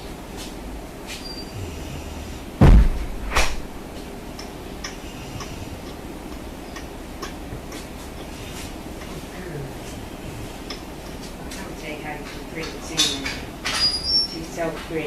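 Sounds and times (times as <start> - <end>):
steady background noise: 0.0 - 15.0
sharp knock: 2.6 - 3.8
heavy thump: 2.6 - 3.9
faint clicks: 3.9 - 9.6.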